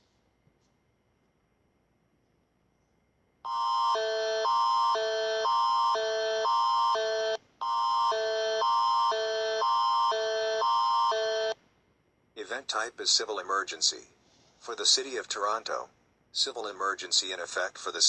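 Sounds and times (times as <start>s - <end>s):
alternating electronic alert chords: 3.5s - 11.6s.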